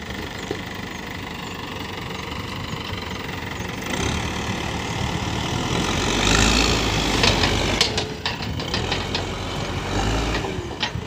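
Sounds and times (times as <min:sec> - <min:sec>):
diesel engine under load: 0:00.0 - 0:11.0
sharp knocks and clanks: 0:07.0 - 0:11.0.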